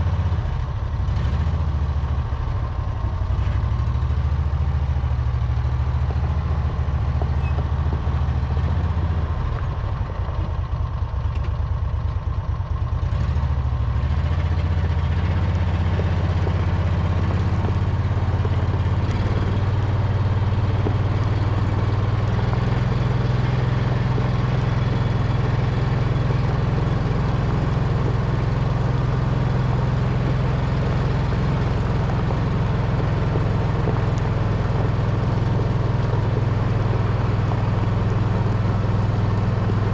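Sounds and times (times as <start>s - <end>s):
engine running with low hum: 0.0s - 39.9s.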